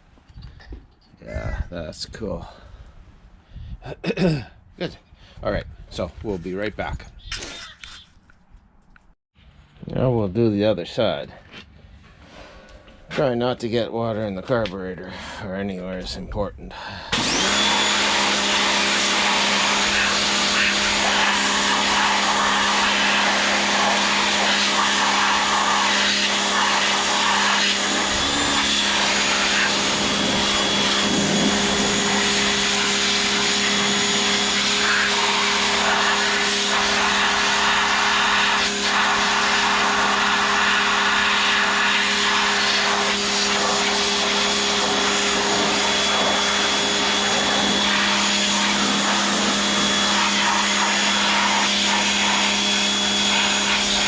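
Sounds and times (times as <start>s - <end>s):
pressure washer motor hum: 17.1s - 54.0s.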